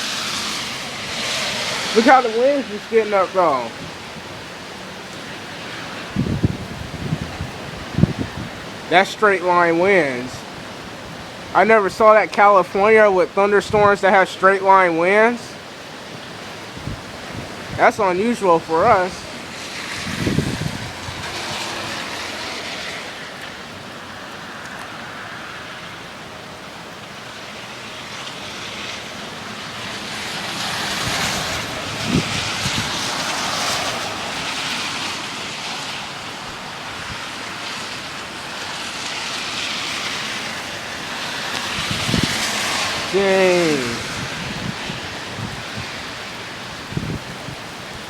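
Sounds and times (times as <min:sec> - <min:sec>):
wind buffeting microphone: 0:00.0 - 0:09.6, 0:16.4 - 0:22.9, 0:30.1 - 0:35.2, 0:35.9 - 0:48.0
wind gusting: 0:00.0 - 0:48.0.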